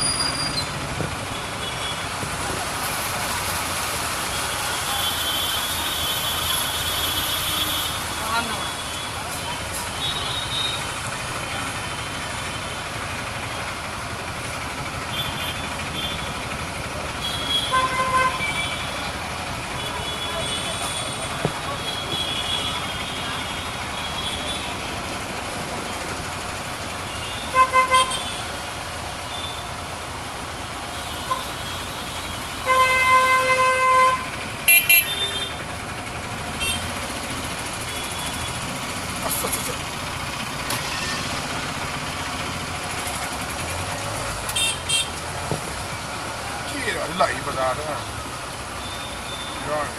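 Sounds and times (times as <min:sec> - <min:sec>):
road traffic noise: 0:00.0 - 0:49.9
vehicle horn honking: 0:27.2 - 0:28.4, 0:32.6 - 0:35.6, 0:36.6 - 0:36.9, 0:44.5 - 0:45.1.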